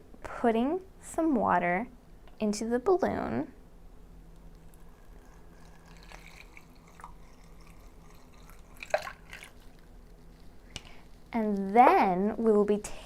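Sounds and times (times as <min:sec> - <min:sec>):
water trickling and dripping: 0:04.8 - 0:09.9.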